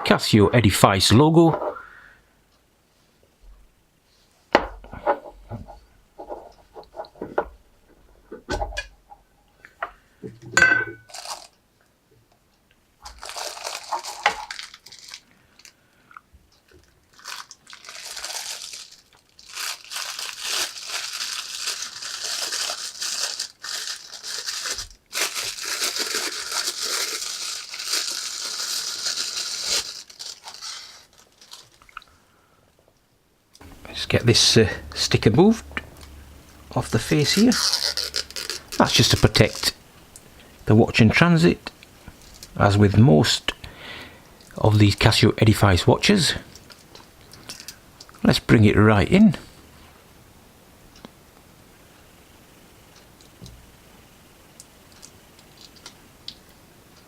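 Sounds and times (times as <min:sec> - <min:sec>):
packaging crinkling and rustling: 0:11.0 - 0:11.6, 0:13.0 - 0:15.8, 0:16.6 - 0:32.1, 0:33.6 - 0:40.2, 0:42.1 - 0:42.6, 0:46.5 - 0:48.2.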